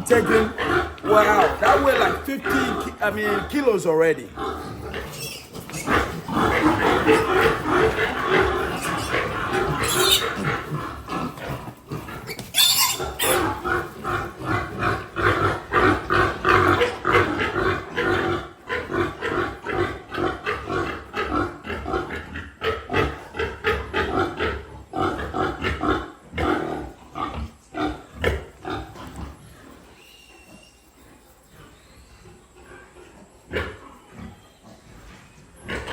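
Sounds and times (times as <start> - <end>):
piglets squealing calls: 0.0 - 11.1, 12.0 - 14.0.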